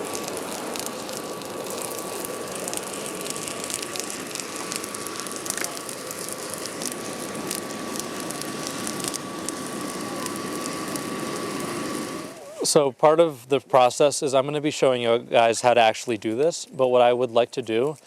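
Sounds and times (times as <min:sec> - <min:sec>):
fire rushing and crackling: 0:00.0 - 0:17.0
thin steady whine: 0:00.0 - 0:18.0.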